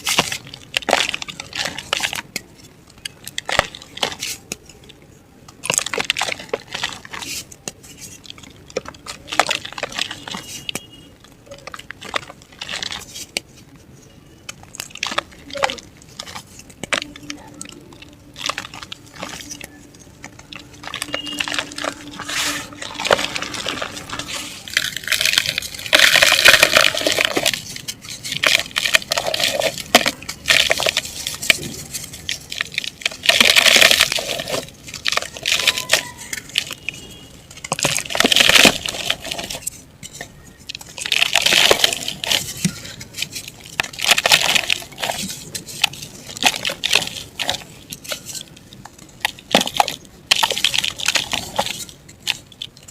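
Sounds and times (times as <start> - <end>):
dried mud crumbling: 0.0 - 52.9
grains falling: 14.9 - 36.9.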